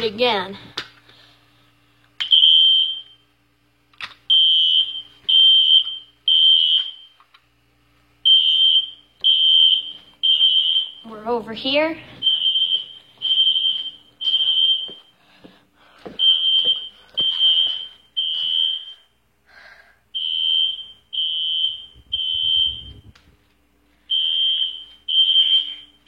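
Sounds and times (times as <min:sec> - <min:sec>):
fire alarm horn beeping: 0:02.2 - 0:03.3, 0:04.3 - 0:07.2, 0:08.2 - 0:11.5, 0:12.2 - 0:15.2, 0:16.2 - 0:19.2, 0:20.2 - 0:23.1, 0:24.0 - 0:26.0.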